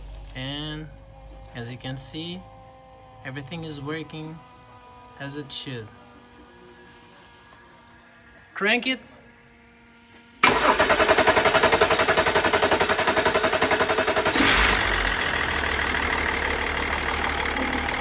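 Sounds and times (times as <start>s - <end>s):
diesel engine idling: 10.4s - 18.0s
starter cranking diesel engine: 10.4s - 18.0s.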